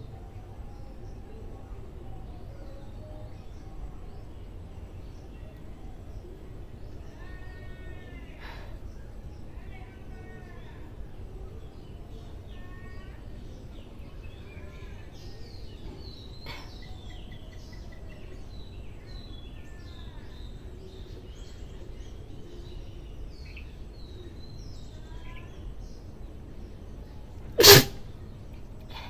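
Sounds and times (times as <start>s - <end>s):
birds chirping: 0.0s - 29.0s
woman sneezing: 27.6s - 28.0s.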